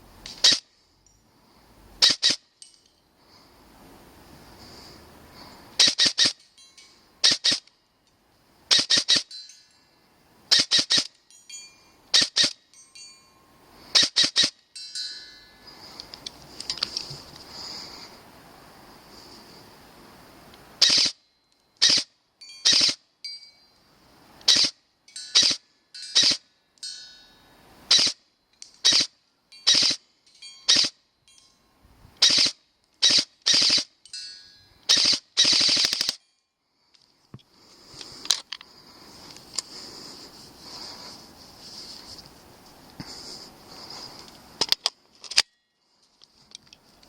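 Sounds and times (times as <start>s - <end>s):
airsoft gun shots: 34.9s - 36.2s.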